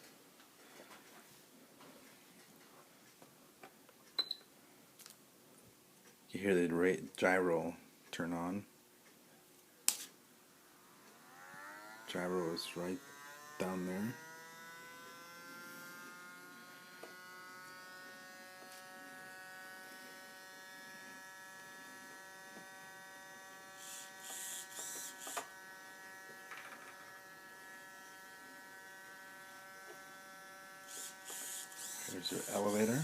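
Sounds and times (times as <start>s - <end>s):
gyro spinning whine: 10.7s - 33.0s
servo buzzes: 10.7s - 33.0s.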